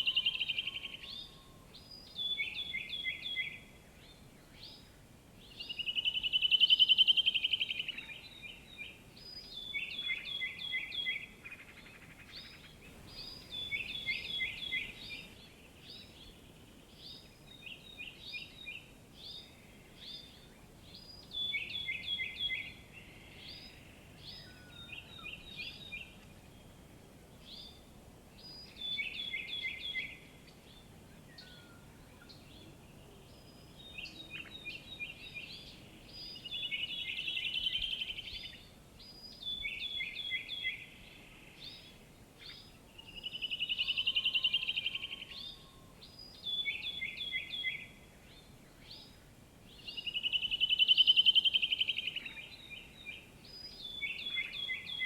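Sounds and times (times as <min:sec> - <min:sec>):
birds singing: 0:00.0 - 0:55.0
faint outdoor background: 0:00.0 - 0:55.0
bird trill: 0:05.5 - 0:16.4, 0:41.6 - 0:47.9.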